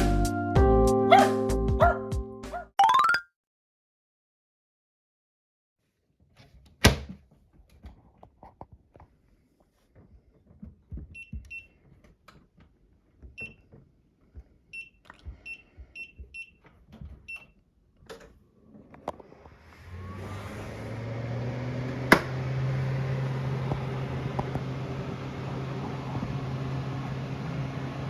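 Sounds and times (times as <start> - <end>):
handling thumps: 22.0 - 22.4
sharp knock: 22.1 - 22.4.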